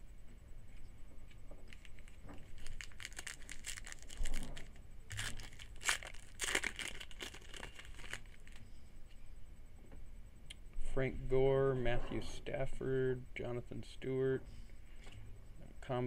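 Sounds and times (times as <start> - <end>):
foil wrapper tearing and crinkling: 1.7 - 8.6.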